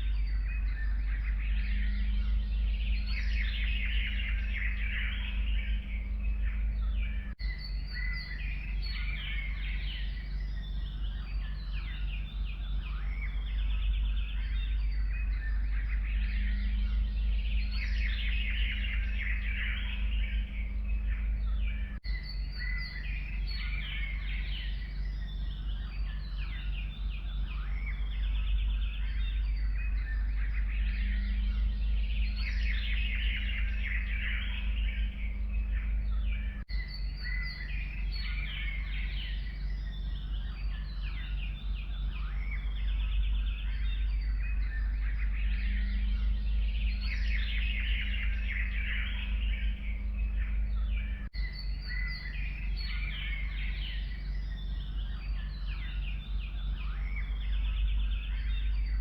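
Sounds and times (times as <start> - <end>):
birds chirping and trilling: 0.0 - 59.0
steady low rumble: 0.0 - 59.0.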